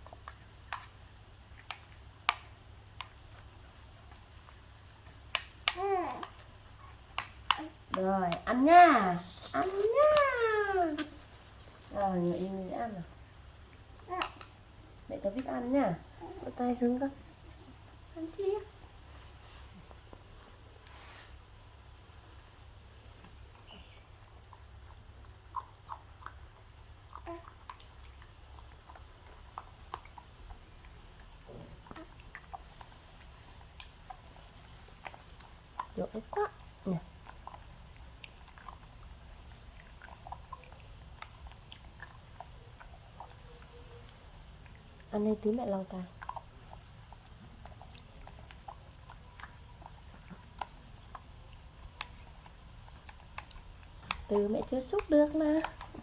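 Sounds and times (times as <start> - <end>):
monkey chewing and mouth clicks: 0.0 - 8.0, 9.1 - 12.0, 22.4 - 56.0
low steady hum: 0.0 - 56.0
monkey chewing: 9.1 - 12.0, 46.1 - 56.0.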